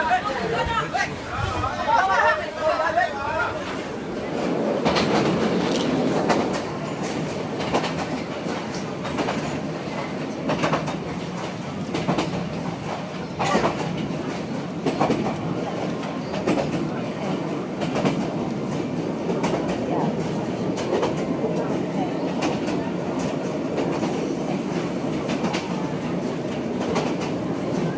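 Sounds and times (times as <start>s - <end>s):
train rumbling: 0.0s - 27.9s
wheels clacking over rail joints: 3.6s - 9.8s.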